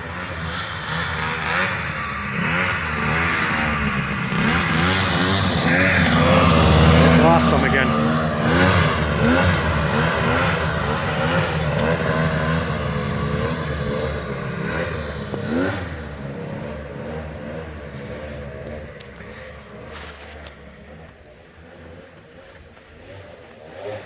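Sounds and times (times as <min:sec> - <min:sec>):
snowmobile engine revving: 0:00.0 - 0:24.0.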